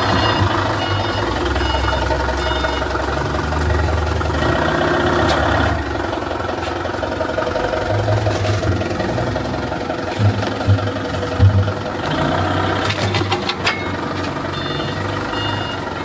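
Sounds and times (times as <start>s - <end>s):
reversing beeper: 0.0s - 5.7s, 13.7s - 16.0s
heavy machine engine revving: 0.0s - 16.0s.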